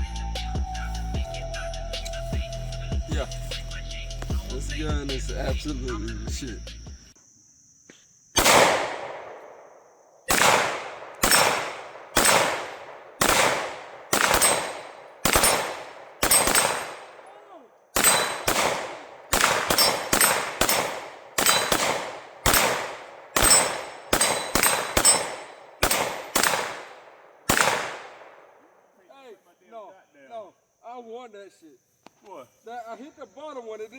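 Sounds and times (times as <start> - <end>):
pistol shots: 8.4 - 9.7, 10.3 - 17.3, 18.0 - 28.5.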